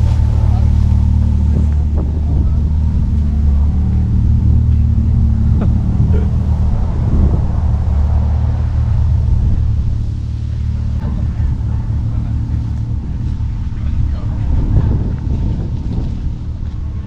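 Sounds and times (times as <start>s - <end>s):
vehicle engine running: 0.0s - 17.0s.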